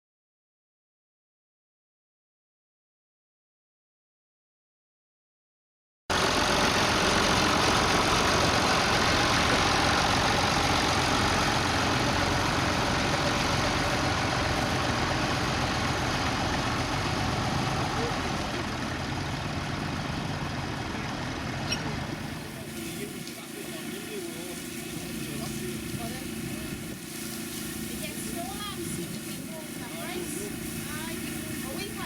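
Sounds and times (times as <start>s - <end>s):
tractor engine running: 6.1s - 32.0s.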